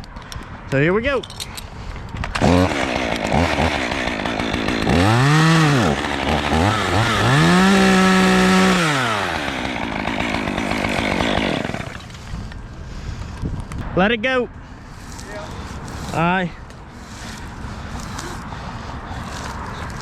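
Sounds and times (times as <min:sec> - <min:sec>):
chainsaw revving: 0:02.4 - 0:12.2, 0:17.0 - 0:18.4.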